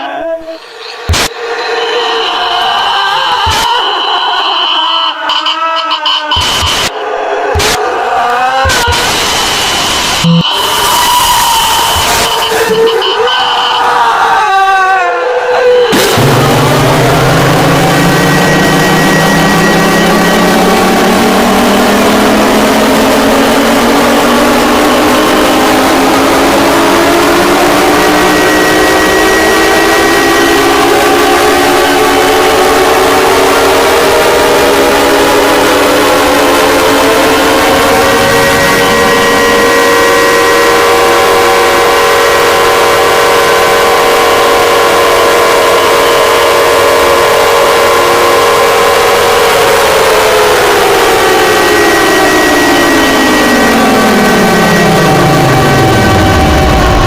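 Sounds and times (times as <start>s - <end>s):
harsh electronic alarm tones: 0.0s - 7.0s, 8.6s - 14.5s, 15.1s - 57.0s.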